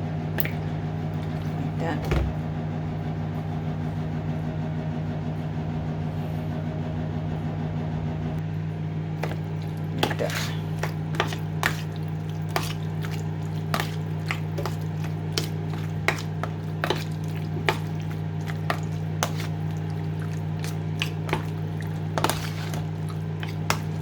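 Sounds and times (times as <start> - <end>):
low electrical hum: 0.0 - 24.0
wet squishing of chicken in marinade: 9.1 - 24.0
clicks and taps against bowl: 9.2 - 24.0.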